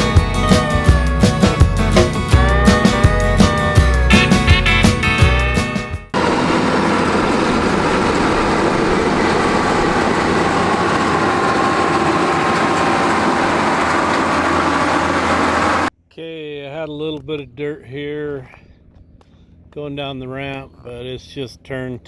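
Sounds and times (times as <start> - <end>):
music track: 0.0 - 6.1
diesel engine running: 6.2 - 15.9.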